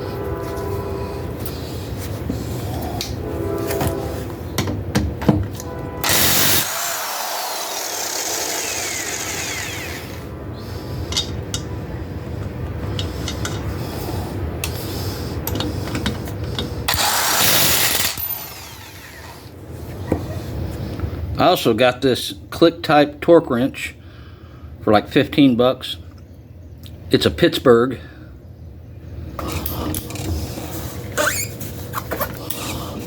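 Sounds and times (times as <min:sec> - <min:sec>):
electric impact wrench bursts: 0:06.0 - 0:10.3, 0:16.9 - 0:19.5.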